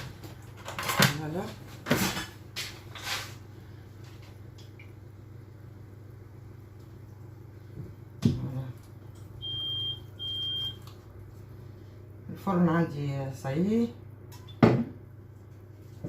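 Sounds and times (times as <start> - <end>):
oven control panel beep: 9.4 - 10.8.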